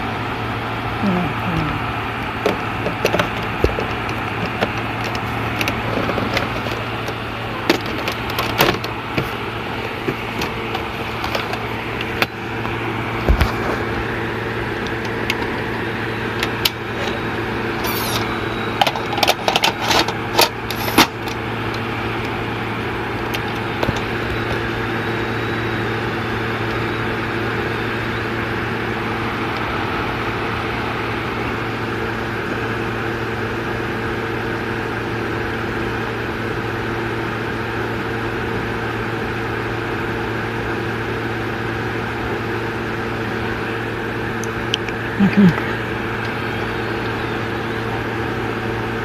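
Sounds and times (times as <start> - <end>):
tape mechanism hum: 0.0 - 49.0.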